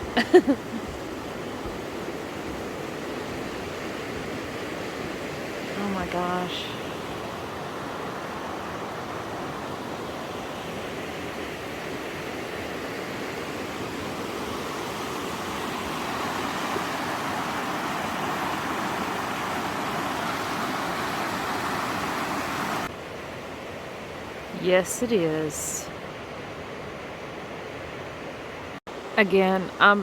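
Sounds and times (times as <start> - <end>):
falling water rushing: 0.0 - 22.9.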